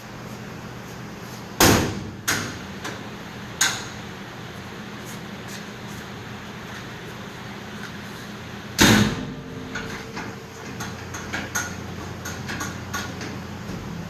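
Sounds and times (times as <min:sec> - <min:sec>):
steady low hum: 0:00.0 - 0:14.0
steel door metallic bang: 0:08.8 - 0:10.1.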